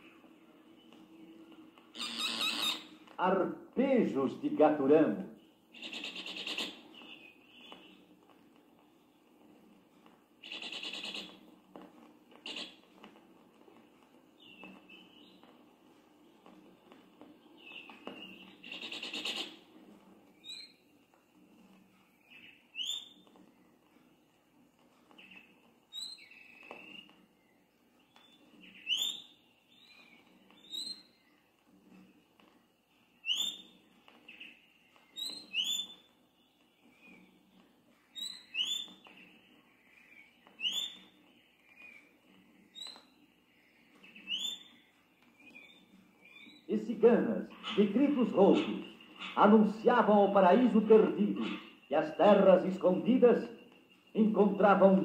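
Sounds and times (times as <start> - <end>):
bird buzzy trill: 1.9 - 3.0, 5.7 - 7.2, 10.4 - 11.4
birds whistling short notes: 1.9 - 3.0, 10.4 - 11.4, 22.3 - 23.2, 25.2 - 27.3, 28.1 - 31.3, 33.2 - 46.7, 51.3 - 54.6
sharp bright bird calls: 1.9 - 3.2, 5.3 - 8.1, 10.4 - 11.5, 12.4 - 12.9, 17.4 - 19.7, 20.4 - 20.9, 22.1 - 23.2, 25.1 - 31.4, 33.2 - 55.0.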